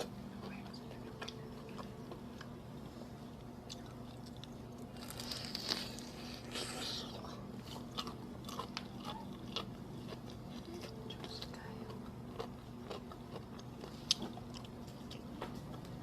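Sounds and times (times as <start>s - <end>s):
crunchy biting and chewing: 3.5s - 16.0s.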